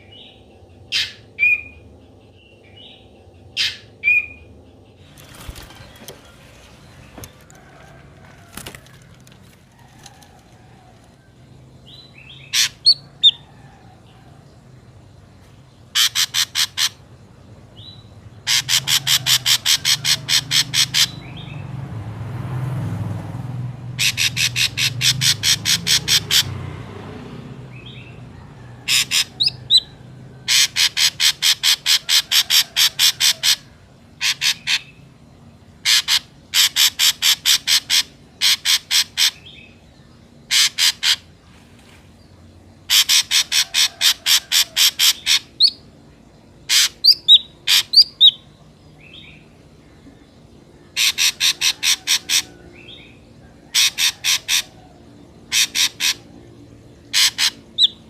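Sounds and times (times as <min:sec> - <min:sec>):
bird calls fast harsh notes: 0:15.9 - 0:17.0, 0:40.5 - 0:41.3, 0:55.5 - 0:56.3, 0:57.1 - 0:58.0.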